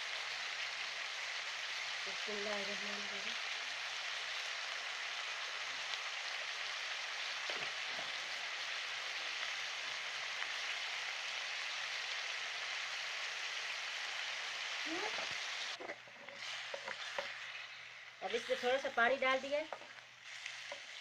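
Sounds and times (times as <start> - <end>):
food sizzling in hot oil: 0.0 - 21.0.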